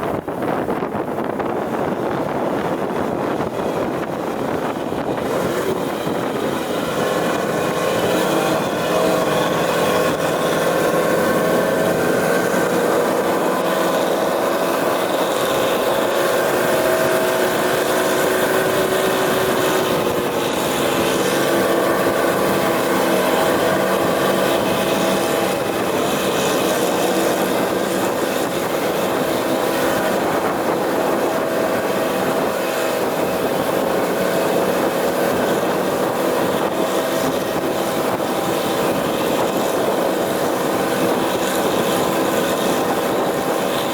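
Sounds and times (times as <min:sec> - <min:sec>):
truck engine running: 0:00.9 - 0:43.9.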